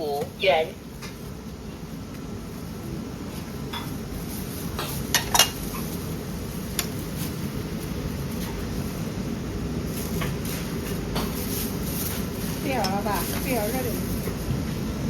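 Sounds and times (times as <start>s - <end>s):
low background noise: 0.0s - 15.0s
crockery and cutlery clinking: 4.8s - 5.6s.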